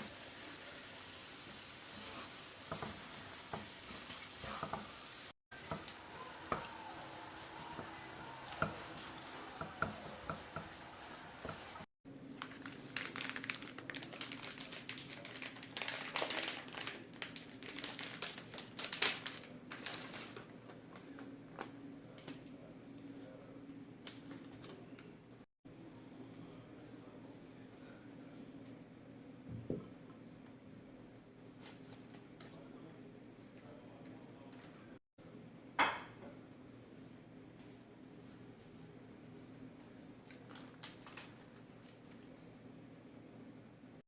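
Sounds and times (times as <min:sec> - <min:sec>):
food sizzling in a frying pan: 0:00.0 - 0:11.9.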